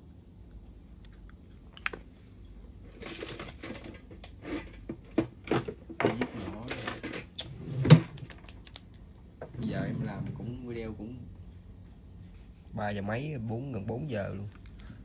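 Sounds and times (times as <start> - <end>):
rustling of price tags: 2.8 - 4.7.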